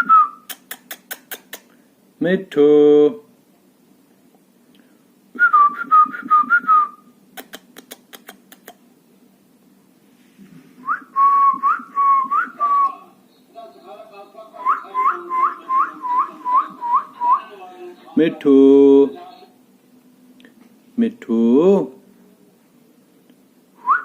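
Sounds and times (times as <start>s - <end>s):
sharp clicks: 7.4s - 8.8s.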